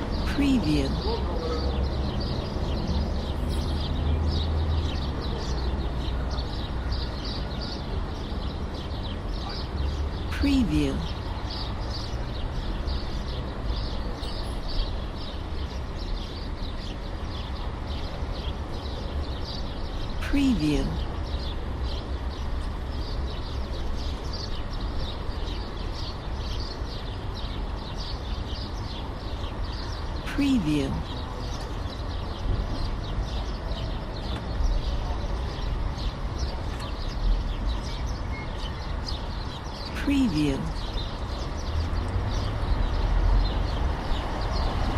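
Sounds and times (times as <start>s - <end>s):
distant traffic rumble: 0.0s - 26.6s
small birds chirping: 0.0s - 44.9s.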